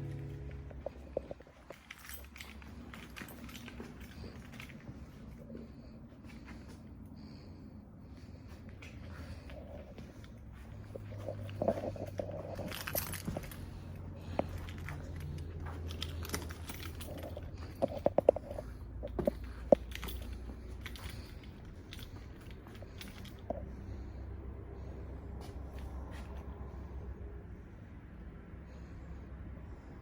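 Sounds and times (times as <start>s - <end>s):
tools and parts being handled: 0.0s - 5.6s, 8.8s - 23.7s
low steady hum: 0.0s - 30.0s.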